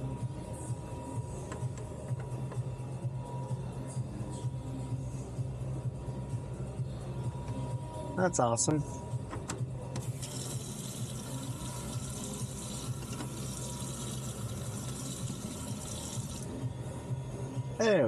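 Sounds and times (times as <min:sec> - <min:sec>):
water running from tap into sink: 0:10.1 - 0:16.4.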